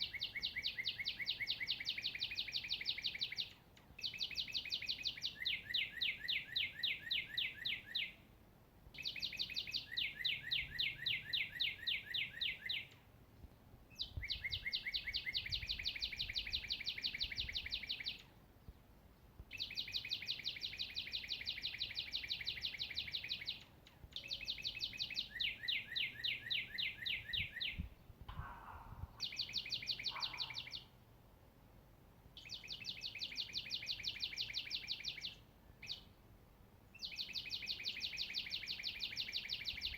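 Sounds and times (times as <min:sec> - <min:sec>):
songbird trilling: 0:00.0 - 0:08.2, 0:09.0 - 0:13.0, 0:13.9 - 0:18.3, 0:19.5 - 0:30.9, 0:32.4 - 0:36.1, 0:37.0 - 0:39.9
faint low bird call: 0:19.5 - 0:30.9.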